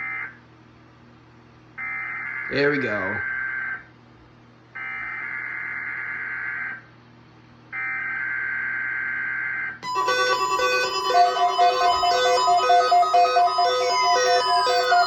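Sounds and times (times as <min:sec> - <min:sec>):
electronic alert beeps: 0:09.8 - 0:15.0
warbling data tones: 0:09.8 - 0:15.0.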